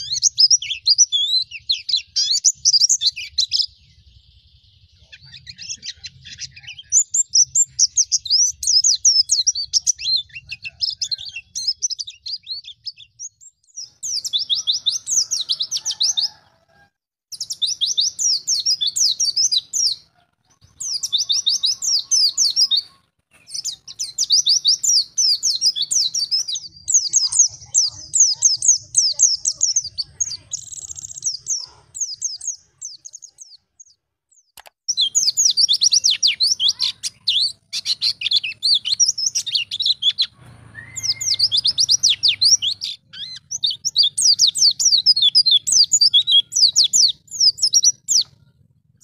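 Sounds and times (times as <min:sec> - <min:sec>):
bird chattering song: 0:00.0 - 0:16.6, 0:17.3 - 0:49.0.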